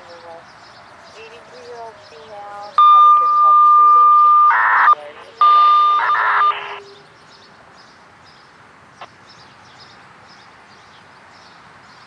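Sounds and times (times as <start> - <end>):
data burst tone with hiss: 2.8 - 6.8.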